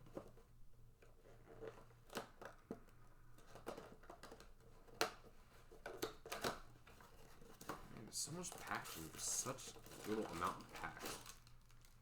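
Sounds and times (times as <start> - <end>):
packaging crinkling and clicking: 5.8 - 12.0.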